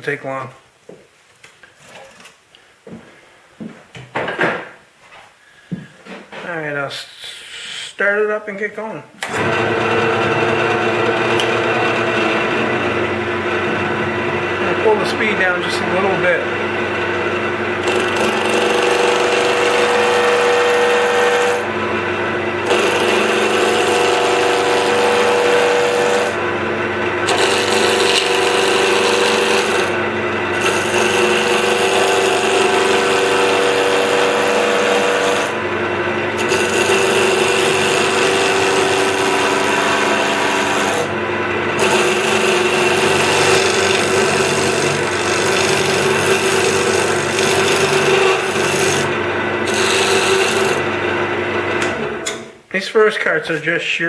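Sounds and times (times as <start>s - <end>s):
wood lathe motor hum: 9.2s - 52.5s
chisel cutting spinning wood: 9.3s - 52.4s.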